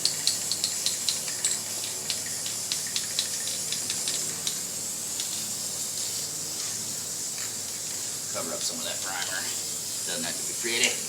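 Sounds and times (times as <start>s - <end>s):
spray paint hissing: 0.0s - 11.0s.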